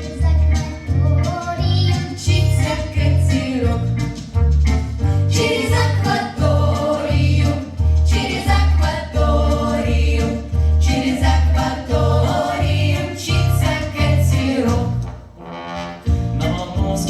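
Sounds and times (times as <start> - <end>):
steady bass beat: 0.2 - 15.1, 16.0 - 17.0
people singing: 2.3 - 3.9, 5.3 - 15.1.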